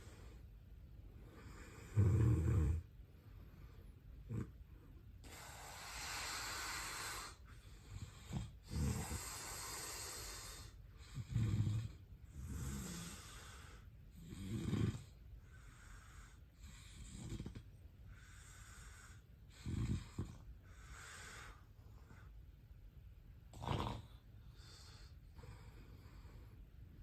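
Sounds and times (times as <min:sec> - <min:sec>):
faint hissing breaths: 0:00.0 - 0:27.0
person snoring: 0:01.4 - 0:02.9, 0:08.0 - 0:15.2, 0:23.5 - 0:24.2.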